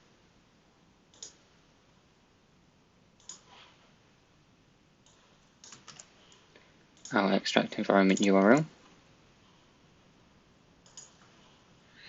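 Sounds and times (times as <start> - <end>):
low room hiss: 0.0 - 12.0
computer mouse clicks: 1.1 - 1.5, 3.2 - 3.6, 5.0 - 7.2, 8.1 - 9.0, 10.8 - 11.4.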